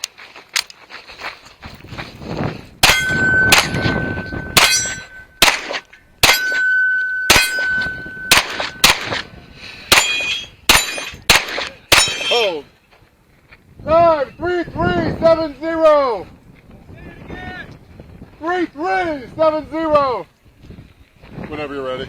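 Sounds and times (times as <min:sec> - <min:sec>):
steel targets ringing: 0:02.8 - 0:09.2, 0:09.9 - 0:12.6
pistol shots: 0:02.8 - 0:09.3, 0:09.9 - 0:12.4.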